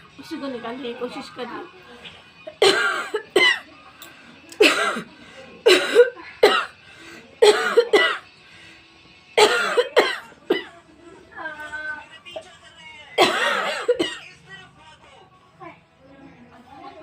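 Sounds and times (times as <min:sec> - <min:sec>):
woman coughing: 0:02.5 - 0:03.7, 0:04.6 - 0:06.8, 0:07.4 - 0:08.3, 0:09.4 - 0:10.8, 0:13.2 - 0:14.3.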